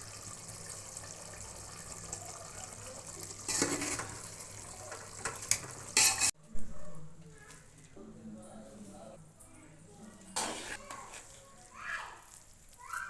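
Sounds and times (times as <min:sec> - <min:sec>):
water running and gushing: 0:00.0 - 0:06.3.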